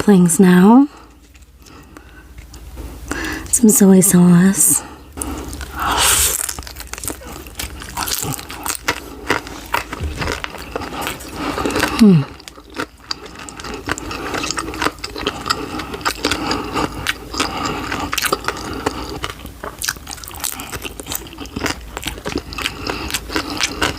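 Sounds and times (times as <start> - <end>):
crunchy bites and wet chewing: 0.9 - 3.5, 5.0 - 23.9
person humming: 11.9 - 12.4.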